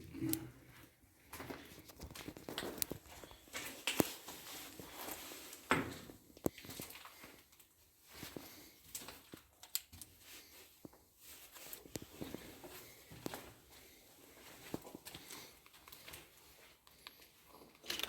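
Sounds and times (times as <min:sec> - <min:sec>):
footsteps and scuffs: 0:10.1 - 0:16.8.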